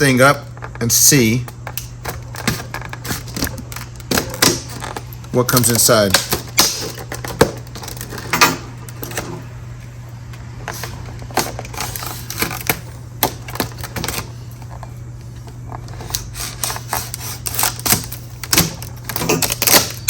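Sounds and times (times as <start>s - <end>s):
steady low hum: 0.0s - 20.0s
packaging and parts clicking: 10.8s - 14.8s, 15.8s - 20.0s.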